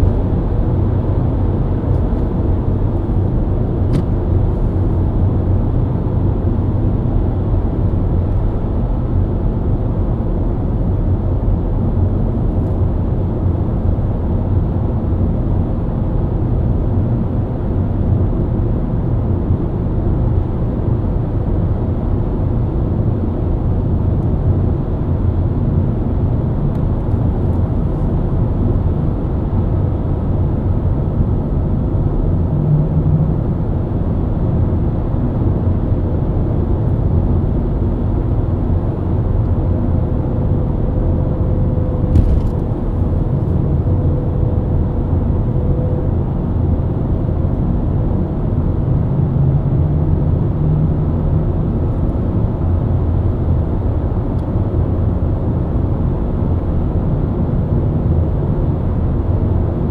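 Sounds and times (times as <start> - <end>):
car engine cruising: 40.6 - 46.4
tyre and road rumble: 42.0 - 43.8.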